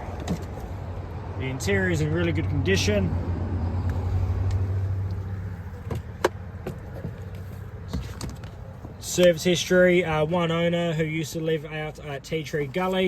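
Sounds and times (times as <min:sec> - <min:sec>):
car engine idling: 0:00.0 - 0:13.0.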